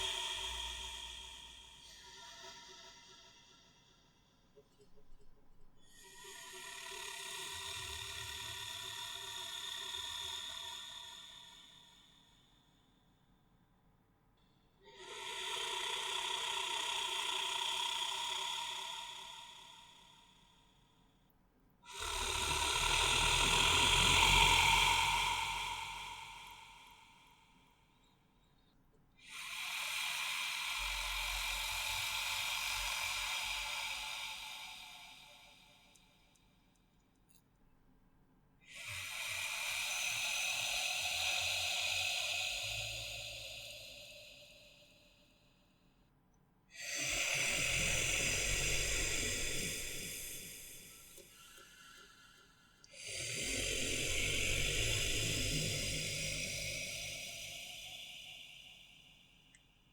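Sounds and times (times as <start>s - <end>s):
monster hissing breath: 21.9s - 27.9s, 29.2s - 36.3s, 38.7s - 45.5s, 46.8s - 59.8s.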